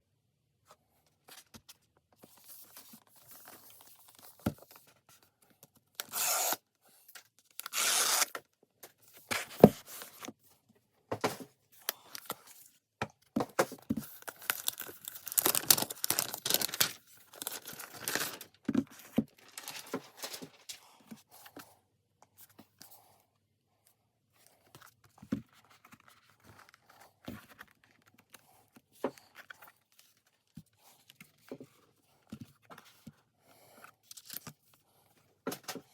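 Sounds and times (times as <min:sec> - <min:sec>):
cardboard tearing: 0:07.6 - 0:08.4
packaging rustling and crinkling: 0:13.7 - 0:21.0.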